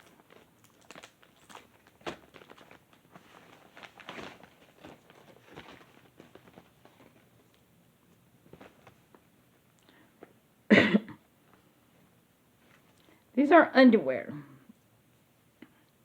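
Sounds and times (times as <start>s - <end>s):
package being opened: 0.0s - 7.6s.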